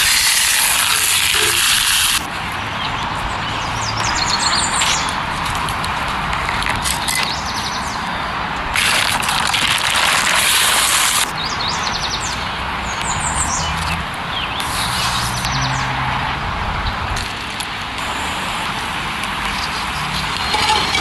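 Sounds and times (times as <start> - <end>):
steady hiss: 0.0 - 2.3, 14.6 - 15.6, 17.9 - 20.1
birds chirping: 2.3 - 5.4, 7.0 - 8.6, 11.3 - 17.1.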